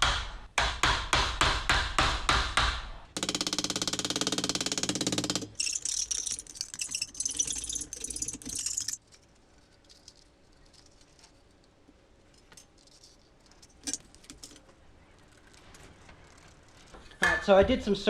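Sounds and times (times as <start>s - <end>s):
rattling jangling noise: 5.6s - 14.7s.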